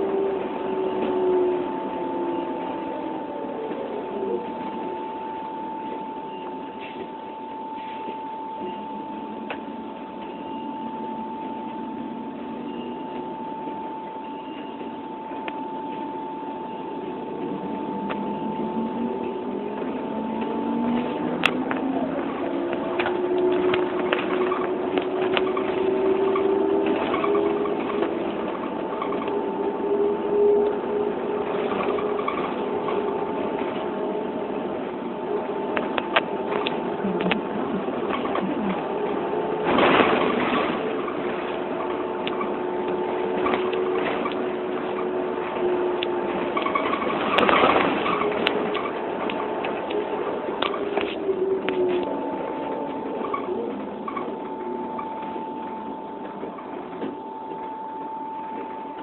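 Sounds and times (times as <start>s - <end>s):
engine running: 0.0s - 59.0s
steady high whine: 0.0s - 59.0s
scattered clicks and knocks: 19.8s - 29.8s, 35.5s - 59.0s.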